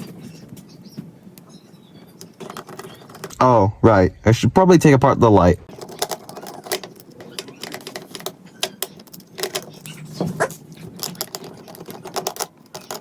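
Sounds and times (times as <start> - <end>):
plastic and metal parts rattling: 2.0 - 3.4, 5.7 - 13.0.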